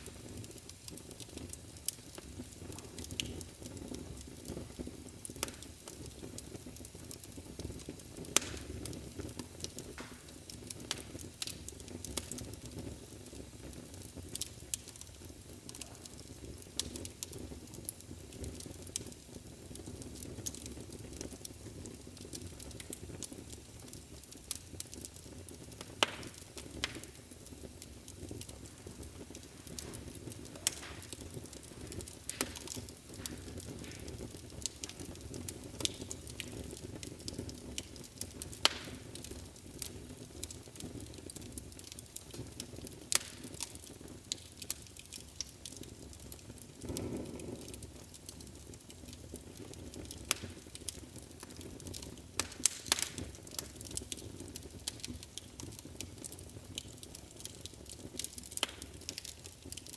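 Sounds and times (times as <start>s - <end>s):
wood fire crackling and popping: 0.0s - 59.9s
rush of flame: 46.8s - 47.8s.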